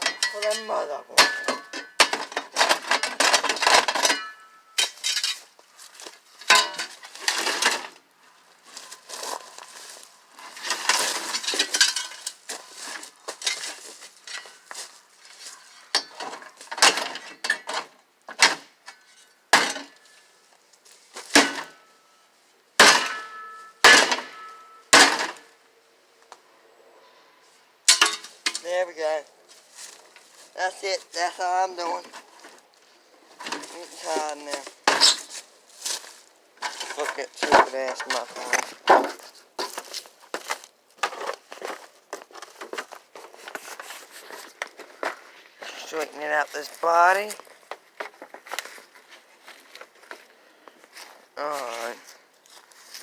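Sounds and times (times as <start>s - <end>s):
metal clanks and crashes: 0.0s - 5.5s, 6.4s - 8.0s, 10.5s - 12.7s, 13.4s - 14.8s, 15.4s - 20.1s, 21.2s - 22.1s, 22.8s - 25.5s, 27.9s - 28.8s, 33.4s - 35.4s, 36.6s - 39.9s
debris rattling and scraping: 0.0s - 20.3s, 20.9s - 22.0s, 27.9s - 50.2s.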